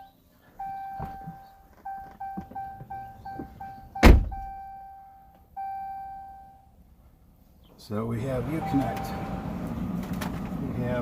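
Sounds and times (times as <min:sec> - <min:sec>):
dashboard warning chime and beeps: 0:00.0 - 0:06.8, 0:08.4 - 0:09.7
loud thump: 0:04.0 - 0:04.5.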